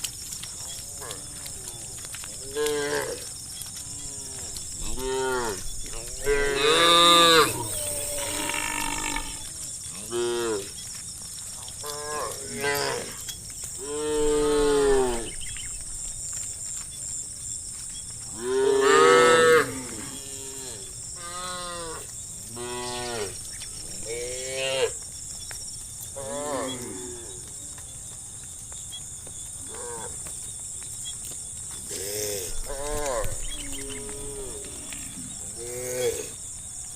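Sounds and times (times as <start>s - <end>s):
cows mooing: 4.0s - 10.7s.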